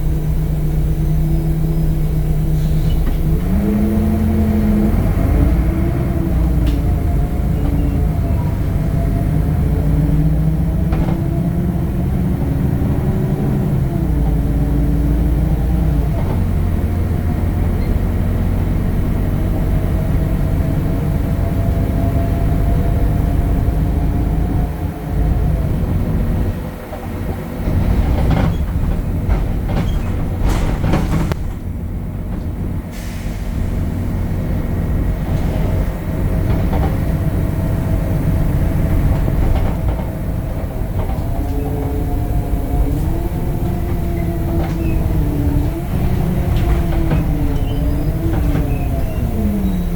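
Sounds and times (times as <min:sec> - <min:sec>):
bus diesel engine droning: 0:00.0 - 0:49.9
gearbox whining: 0:33.6 - 0:49.9.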